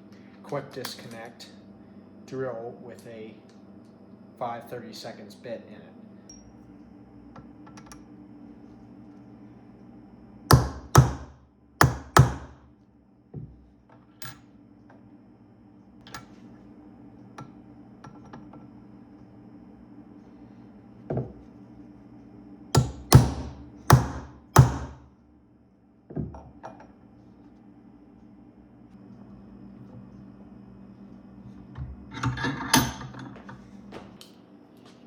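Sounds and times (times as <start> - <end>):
hammer striking metal punch: 10.5 - 12.5, 22.8 - 25.0.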